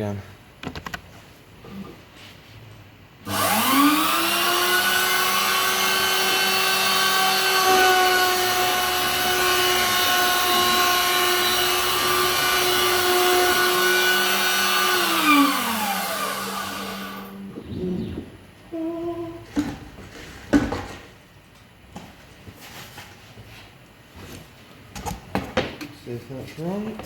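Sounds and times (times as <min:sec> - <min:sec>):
router spindle whine: 0:03.3 - 0:17.4.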